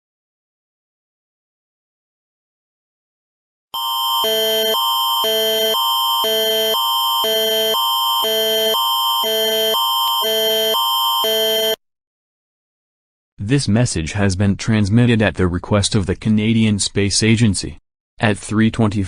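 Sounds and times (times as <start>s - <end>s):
electronic alert tone: 3.8s - 11.8s.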